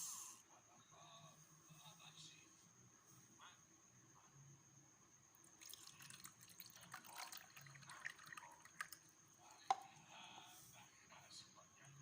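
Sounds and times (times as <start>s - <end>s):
water splashing and dripping: 5.6s - 9.1s.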